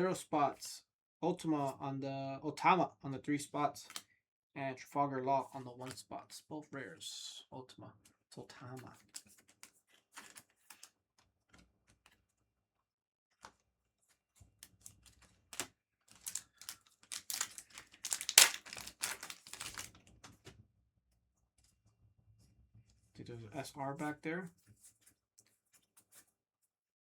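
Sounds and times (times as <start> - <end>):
trading cards clicking and snapping: 15.6 - 19.9
booster pack crinkling: 15.6 - 20.0.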